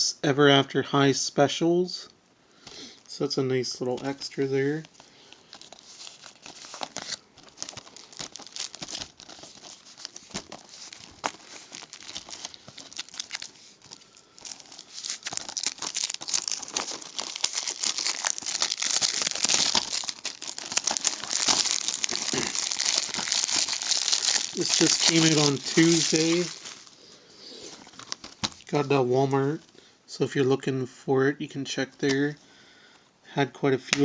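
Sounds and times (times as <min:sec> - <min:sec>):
plastic shrink-wrap crinkling: 0:04.0 - 0:29.7.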